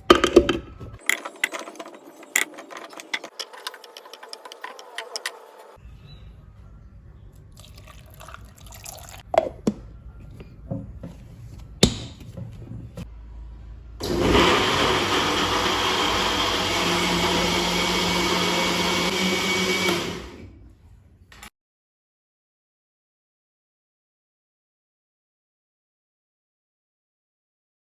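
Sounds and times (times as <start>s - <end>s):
electric blender running: 14.0s - 20.6s.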